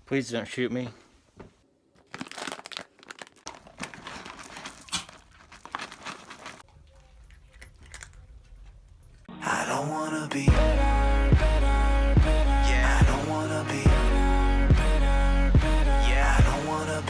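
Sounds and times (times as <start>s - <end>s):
plastic packaging tearing and crinkling: 2.0s - 6.7s.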